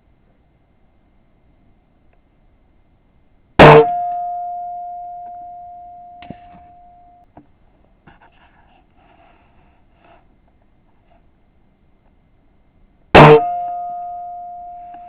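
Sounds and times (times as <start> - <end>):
metallic ring: 3.6 - 7.3, 13.2 - 15.0.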